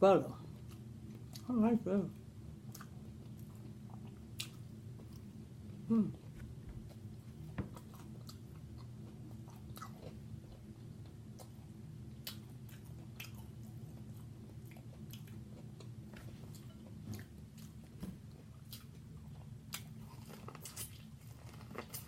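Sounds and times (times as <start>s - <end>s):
close chewing and biting: 6.4s - 22.0s.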